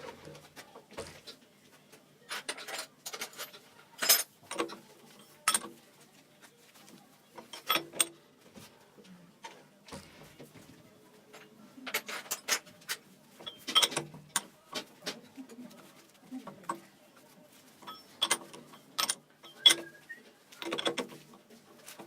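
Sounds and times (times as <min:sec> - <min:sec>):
metal tools clinking: 0:02.4 - 0:05.8, 0:07.4 - 0:08.1, 0:13.4 - 0:14.5, 0:17.8 - 0:19.9, 0:20.6 - 0:21.2.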